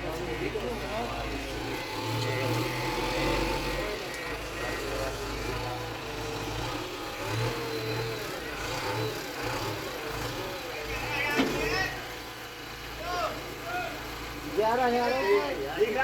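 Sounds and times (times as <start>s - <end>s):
faint voices: 0.0s - 16.0s
heavy diesel engine rumbling: 0.0s - 16.0s.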